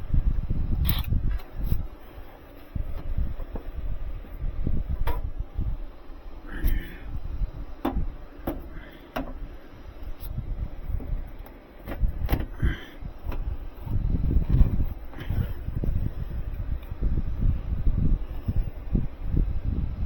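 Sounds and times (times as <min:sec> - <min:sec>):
low rumbling handling noise: 0:00.0 - 0:20.0
metal panel knocks and clicks: 0:11.0 - 0:12.5.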